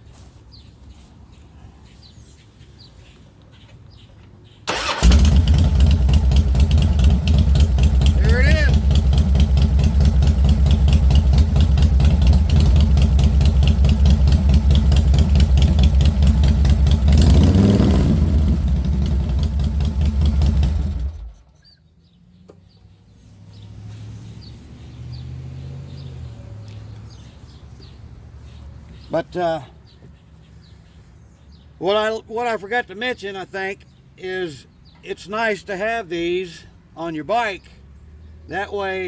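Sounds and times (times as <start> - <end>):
motorcycle engine idling: 4.7 - 21.5.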